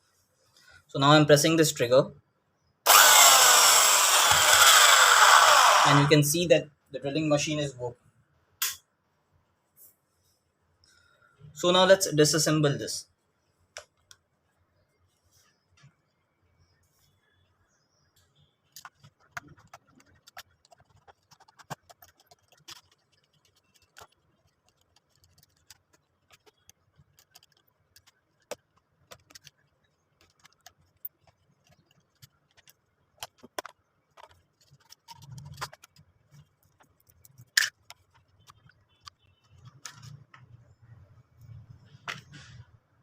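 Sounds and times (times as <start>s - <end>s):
plastic parts clicking and clinking: 18.7s - 40.5s.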